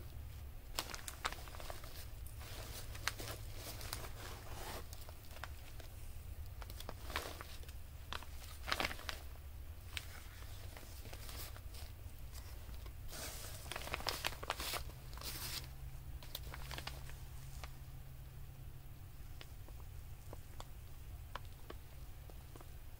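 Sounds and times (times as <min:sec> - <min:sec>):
paper rustling and crinkling: 0:00.7 - 0:17.9.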